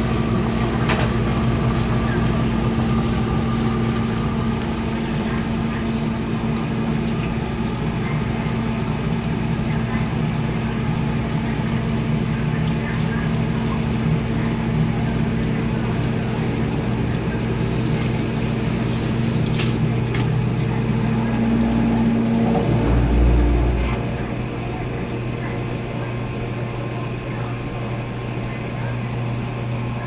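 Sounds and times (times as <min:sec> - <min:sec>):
dishwasher motor hum: 0:00.0 - 0:30.0
low rumble: 0:21.1 - 0:26.4.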